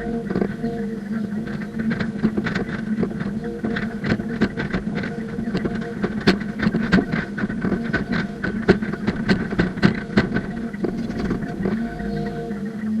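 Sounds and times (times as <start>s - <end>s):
rapid clicking clatter: 0.0s - 12.4s
excavator engine humming: 0.0s - 12.9s.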